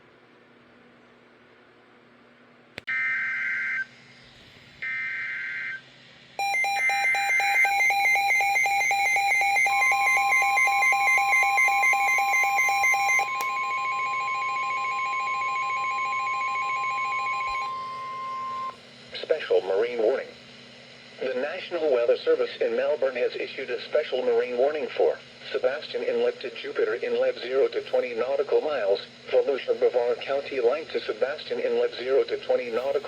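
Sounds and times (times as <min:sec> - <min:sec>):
rapid beeping alarm: 0:06.4 - 0:18.8
steady warning alarm tone: 0:06.4 - 0:18.8.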